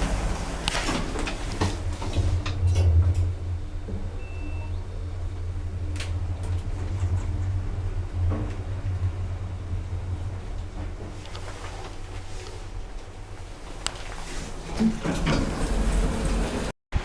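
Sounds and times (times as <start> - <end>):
lift hum: 0.0 - 16.7
faint beep: 4.2 - 5.0.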